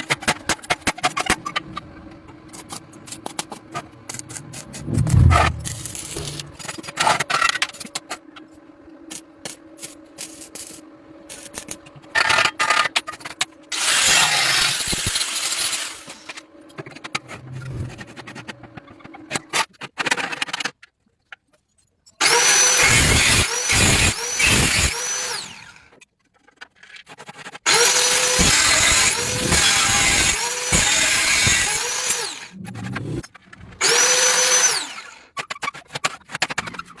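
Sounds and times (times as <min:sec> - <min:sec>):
low steady hum: 0:01.4 - 0:06.8
power tool whining: 0:27.7 - 0:35.3.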